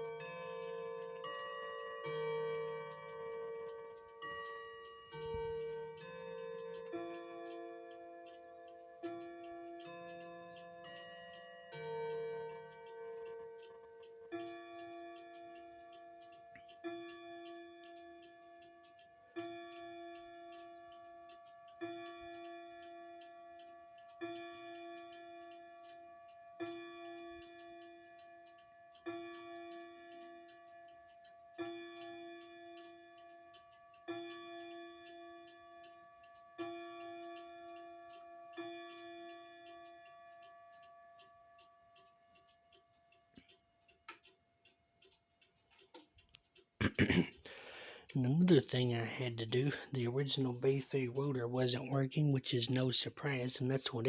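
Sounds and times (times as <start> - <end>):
chime clock striking: 0.0 - 42.2.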